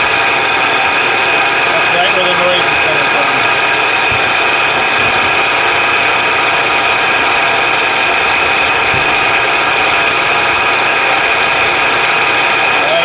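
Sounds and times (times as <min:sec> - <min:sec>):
car engine running: 0:00.0 - 0:13.0
growling whine from belt pulley: 0:00.0 - 0:13.0.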